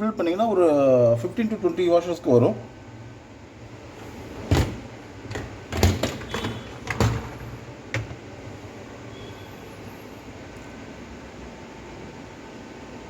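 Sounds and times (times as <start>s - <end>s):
dishwasher parts clicking: 4.4s - 8.2s.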